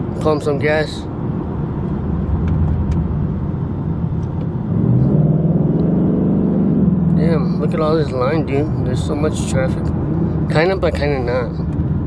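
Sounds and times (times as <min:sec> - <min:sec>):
road noise: 0:00.0 - 0:12.0
car engine accelerating: 0:01.3 - 0:12.0.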